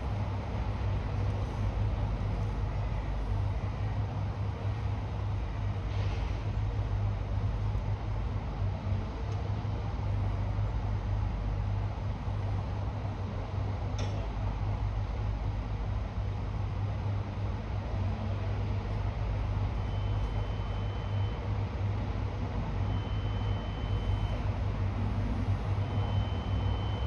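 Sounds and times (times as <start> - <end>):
machinery engine drone: 0.0 - 27.0.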